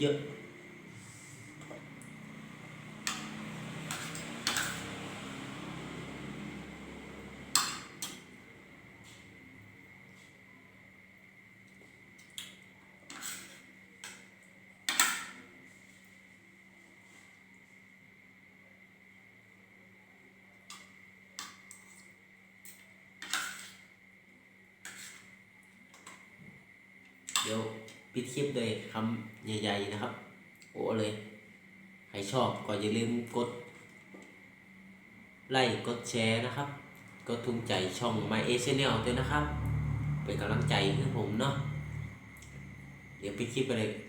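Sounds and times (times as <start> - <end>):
faint steady whine: 0.0 - 44.0
steady background hum: 0.0 - 44.0
utensils clinking against dishes: 3.1 - 5.0.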